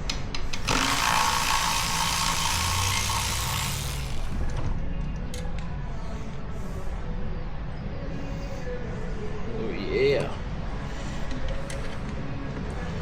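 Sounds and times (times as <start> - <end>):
power driver spinning: 0.5 - 4.6.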